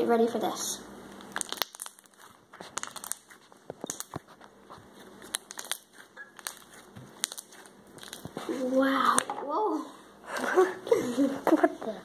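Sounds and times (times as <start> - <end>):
slime crackling and popping: 1.1 - 9.3.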